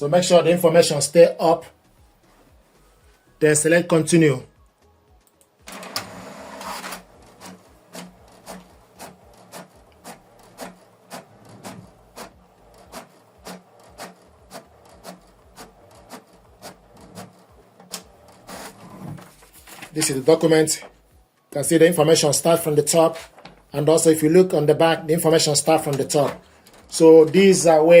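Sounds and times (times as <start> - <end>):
printer paper feed rushing: 5.7 - 19.4
print carriage clicking: 5.7 - 20.3, 22.0 - 28.0.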